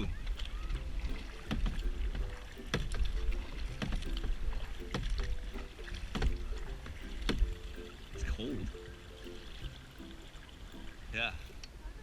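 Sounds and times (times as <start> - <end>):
paddle strokes in water: 0.0 - 12.0.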